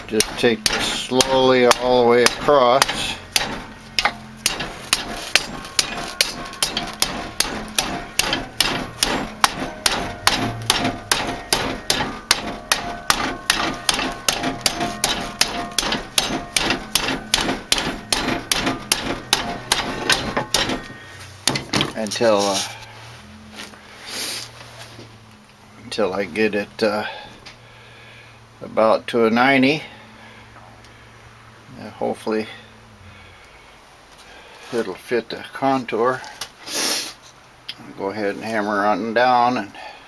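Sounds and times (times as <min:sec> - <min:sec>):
hammer striking sheet metal: 0:00.0 - 0:22.5.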